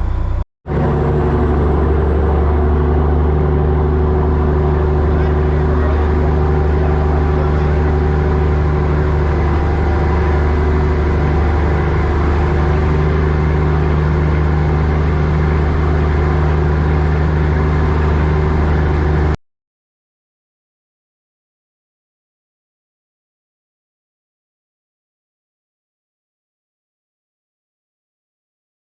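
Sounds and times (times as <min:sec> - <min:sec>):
boat engine running: 0:00.0 - 0:19.4.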